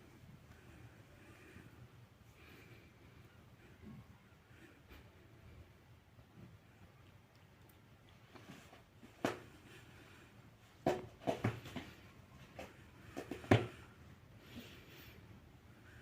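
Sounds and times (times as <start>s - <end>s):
objects knocking and clunking: 10.8s - 12.0s.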